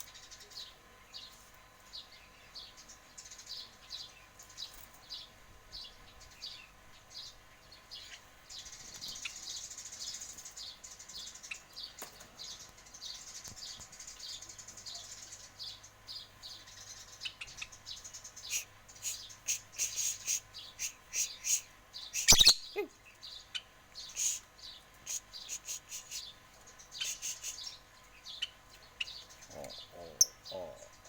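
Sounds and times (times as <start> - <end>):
lovebird chirping: 12.6 - 24.4, 25.1 - 31.0.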